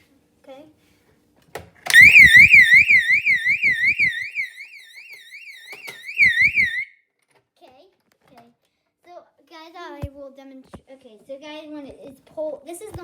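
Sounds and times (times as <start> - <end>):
fire alarm warbling: 1.9 - 6.9.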